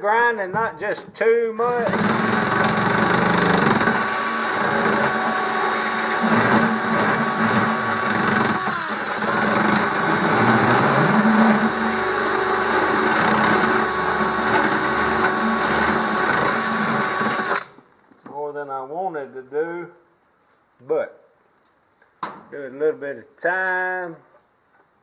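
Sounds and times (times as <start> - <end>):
power drill whining: 1.6 - 17.7.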